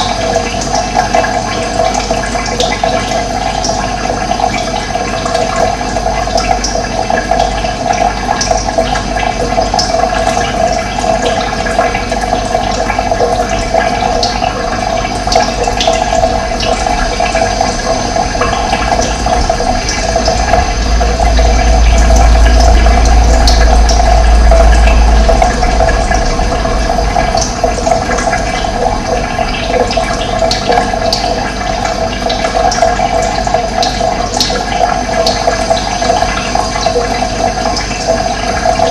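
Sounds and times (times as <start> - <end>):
running water rushing: 0.0 - 38.9
deep low rumble: 13.0 - 33.1.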